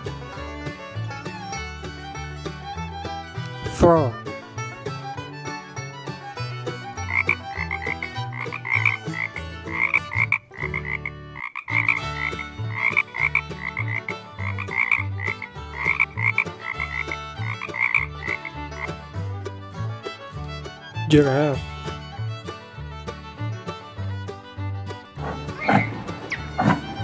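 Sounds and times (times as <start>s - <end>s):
frogs croaking: 7.1s - 18.9s.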